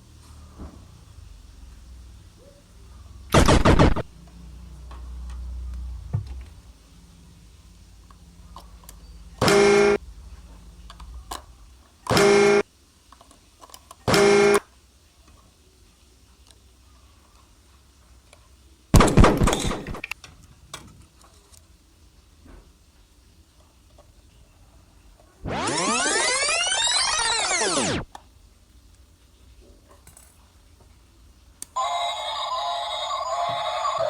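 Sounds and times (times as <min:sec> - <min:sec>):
noisy sound effect burst: 0:03.3 - 0:04.1, 0:19.0 - 0:20.0, 0:25.4 - 0:28.1
toy electronic horn honking: 0:09.4 - 0:10.0, 0:12.1 - 0:12.6, 0:14.1 - 0:14.6, 0:31.8 - 0:34.0.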